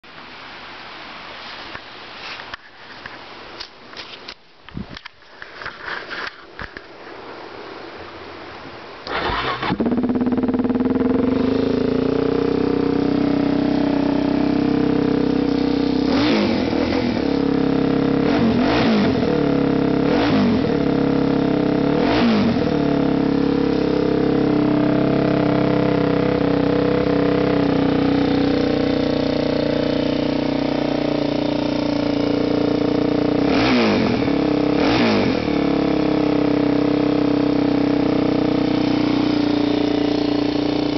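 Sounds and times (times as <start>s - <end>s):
dirt bike engine idling: 9.1s - 40.9s
engine revving: 9.1s - 40.9s.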